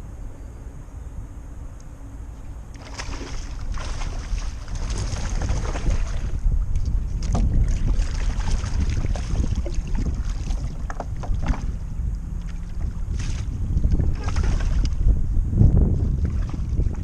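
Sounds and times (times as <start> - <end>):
wind buffeting microphone: 2.4 - 17.0
knocks and splashes against hull: 2.8 - 15.0, 16.1 - 17.0.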